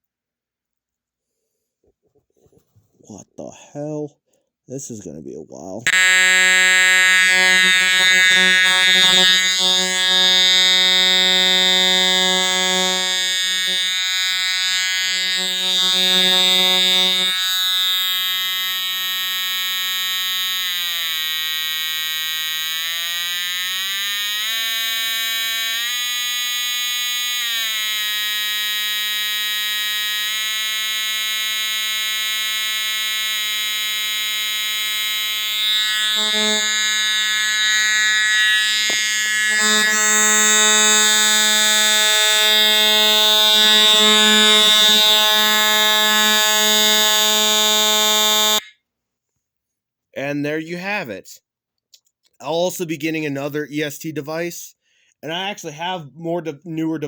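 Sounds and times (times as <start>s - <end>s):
fire alarm horn buzzing tone: 5.9s - 48.8s.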